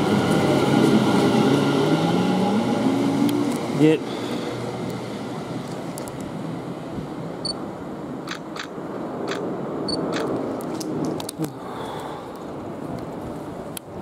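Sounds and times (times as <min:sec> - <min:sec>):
electric train rolling rumble: 0:00.0 - 0:14.0
sharp clicks: 0:08.3 - 0:11.4.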